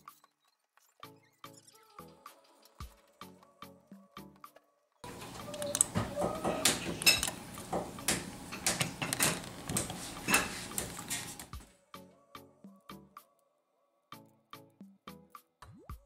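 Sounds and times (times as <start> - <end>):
handling clicks and knocks: 5.0 - 11.6.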